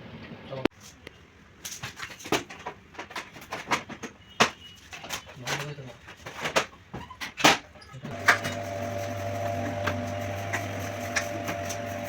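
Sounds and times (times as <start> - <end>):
air conditioner blower humming: 8.1 - 12.0.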